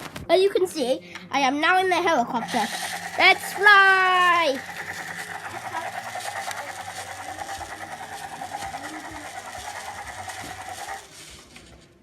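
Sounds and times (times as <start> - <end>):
toy helicopter rotor whirring: 1.8 - 11.8.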